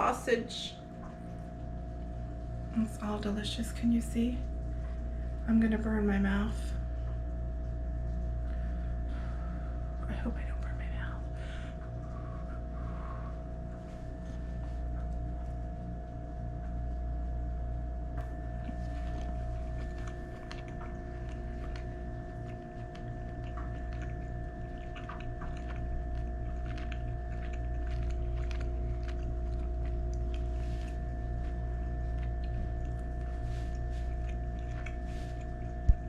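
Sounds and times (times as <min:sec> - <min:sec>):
steady low hum: 0:00.0 - 0:36.0
person chewing food: 0:06.9 - 0:10.0, 0:11.5 - 0:17.1, 0:18.2 - 0:36.0.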